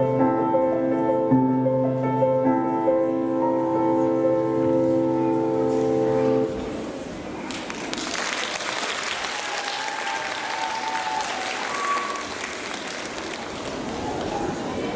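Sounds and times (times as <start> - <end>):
music held chord: 0.0 - 6.6
audience applause: 7.4 - 14.9.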